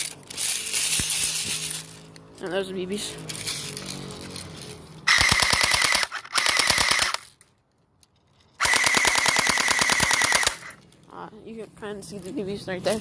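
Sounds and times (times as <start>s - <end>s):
airsoft gun firing bursts: 5.1s - 7.2s, 8.6s - 10.8s.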